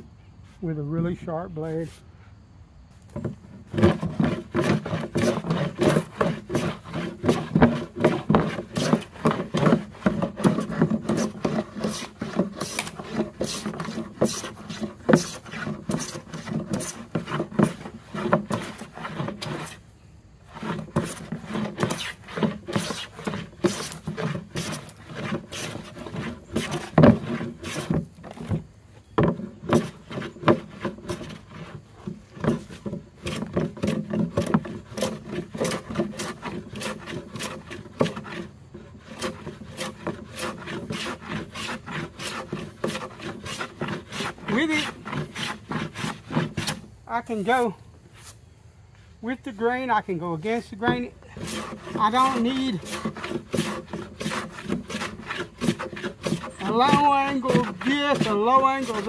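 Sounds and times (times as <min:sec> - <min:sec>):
hand plane shaving wood: 0:03.1 - 0:47.8, 0:49.5 - 0:59.0.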